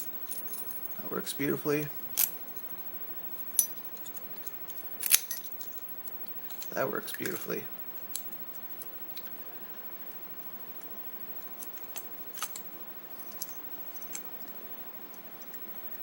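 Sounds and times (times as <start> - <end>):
keys and lock metallic clicks: 2.0 - 2.7, 3.4 - 9.3, 11.6 - 14.5.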